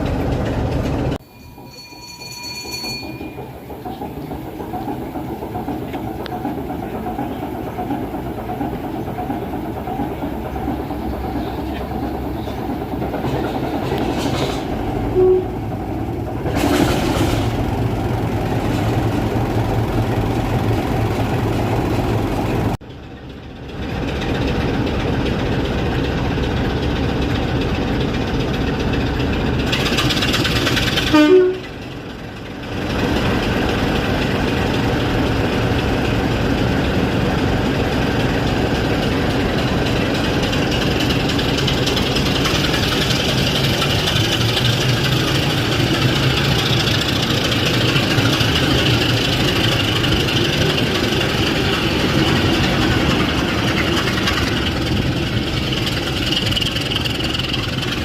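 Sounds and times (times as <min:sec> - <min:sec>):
train locomotive running: 0:00.0 - 0:58.0
train horn toot: 0:15.1 - 0:15.6, 0:31.1 - 0:31.8.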